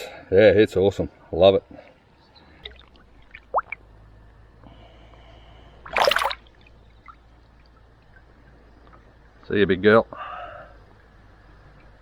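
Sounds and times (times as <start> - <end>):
water drips and clicks: 2.6 - 3.8, 5.9 - 9.1
water splash: 2.6 - 3.8, 5.8 - 7.2.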